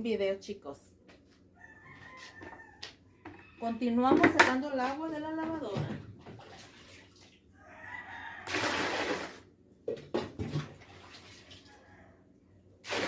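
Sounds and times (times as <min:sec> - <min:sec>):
water splashing: 0:06.2 - 0:07.4, 0:10.2 - 0:11.8.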